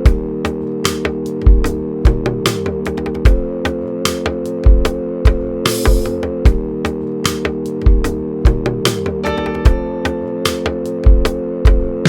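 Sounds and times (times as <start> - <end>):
held chords: 9.2 - 12.0.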